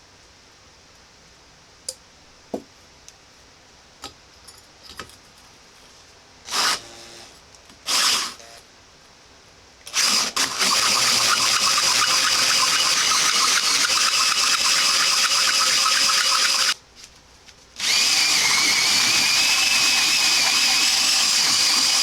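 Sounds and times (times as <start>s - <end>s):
cordless drill cutting steel: 6.5s - 7.3s, 7.9s - 8.5s, 9.9s - 16.8s, 17.8s - 22.0s.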